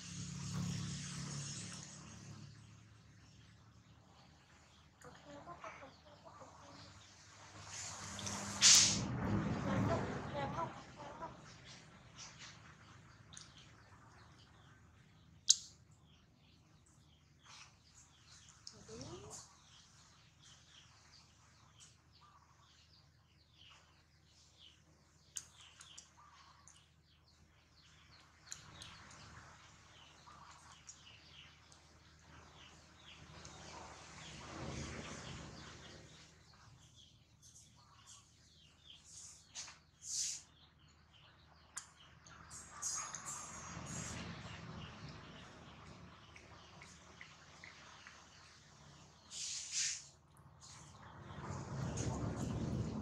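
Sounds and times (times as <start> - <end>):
rustle: 7.3 - 9.1, 39.1 - 40.5, 49.2 - 50.9
short bursts of hiss: 7.7 - 9.0, 40.0 - 40.4, 49.3 - 50.1.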